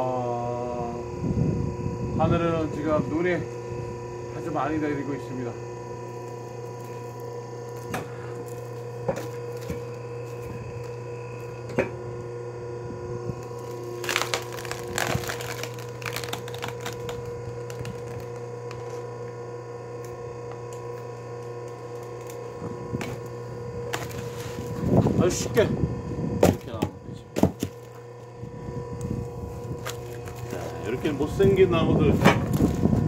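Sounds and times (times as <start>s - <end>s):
log splitter motor humming: 0.0s - 33.0s
wood snapping and splintering: 6.2s - 12.0s, 13.2s - 25.2s, 26.4s - 28.3s, 29.0s - 33.0s.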